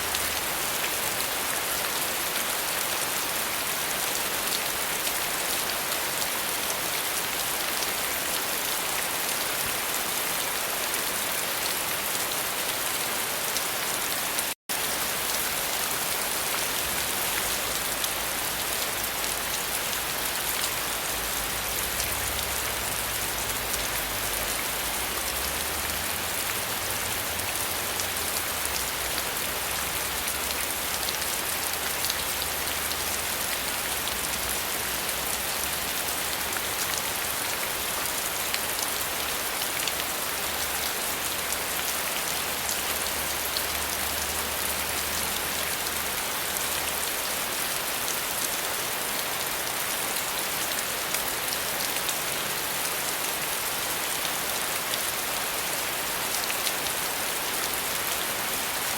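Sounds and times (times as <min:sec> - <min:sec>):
steady rain hiss: 0:14.4 - 0:58.9.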